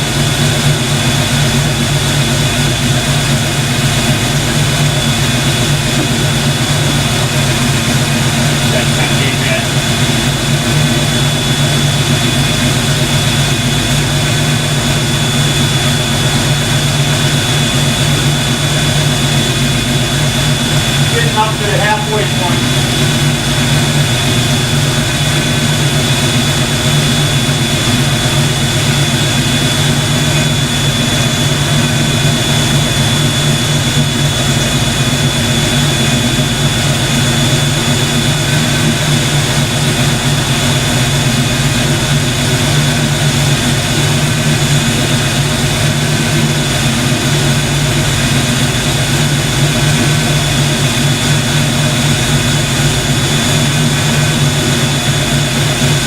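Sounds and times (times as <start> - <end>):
car engine running: 0.0 - 56.0
fan-like airflow rushing: 0.0 - 56.0
thin high whine: 3.2 - 43.9.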